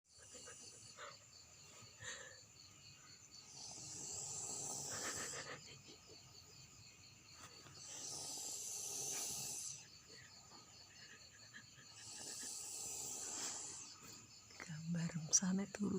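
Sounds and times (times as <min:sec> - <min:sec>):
person snoring: 0:03.5 - 0:05.4, 0:07.8 - 0:09.8, 0:12.0 - 0:14.0.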